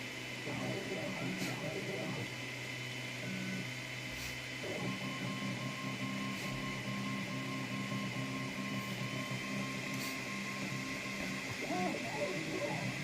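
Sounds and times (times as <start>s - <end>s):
stepper motors whining: 6.7s - 13.0s.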